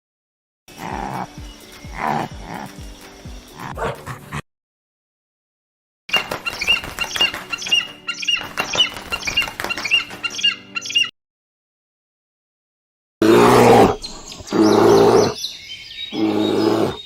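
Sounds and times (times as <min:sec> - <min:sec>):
animal squeaking call: 0:09.8 - 0:11.1, 0:16.1 - 0:17.0.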